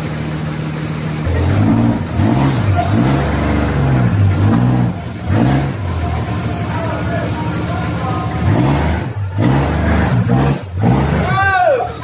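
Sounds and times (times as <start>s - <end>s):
vehicle engine revving: 0.0s - 12.0s.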